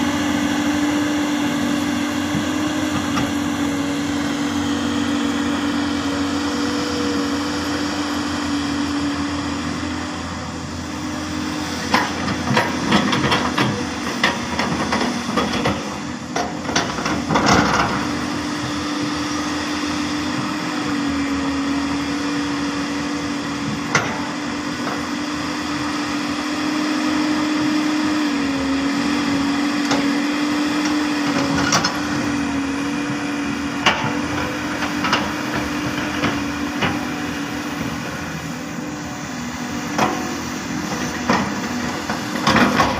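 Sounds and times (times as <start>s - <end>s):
excavator engine running: 0.0s - 42.9s.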